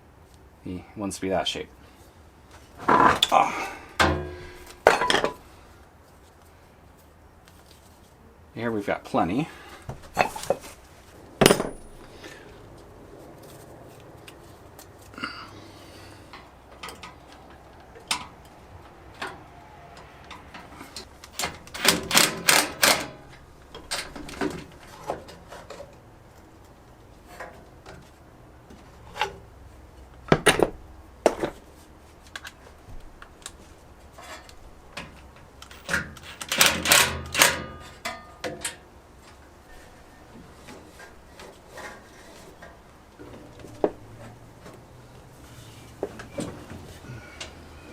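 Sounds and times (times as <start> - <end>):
tools and parts clicking on workbench: 4.0 - 5.4, 16.3 - 28.2, 32.2 - 39.6.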